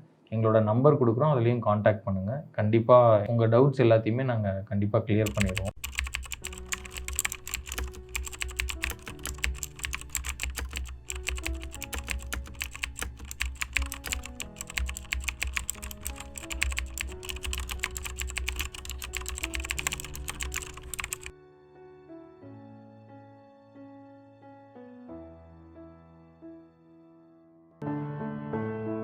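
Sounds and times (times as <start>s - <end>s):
soft background music: 4.9s - 29.0s
computer keyboard typing: 5.2s - 21.3s.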